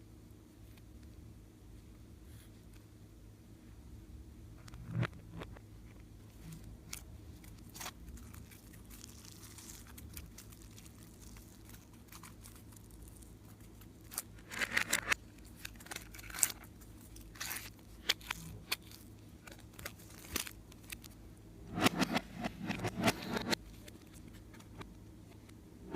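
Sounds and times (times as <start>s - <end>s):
slime crackling and popping: 6.6s - 21.2s.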